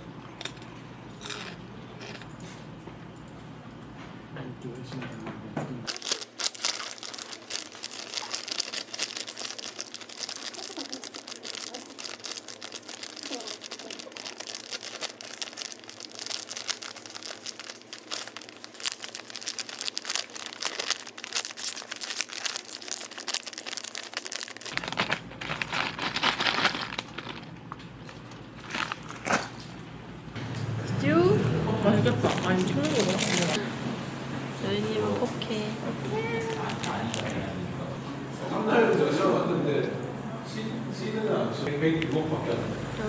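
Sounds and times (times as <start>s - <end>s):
snack packaging crinkling: 5.9s - 29.8s, 32.1s - 33.6s, 36.5s - 37.4s.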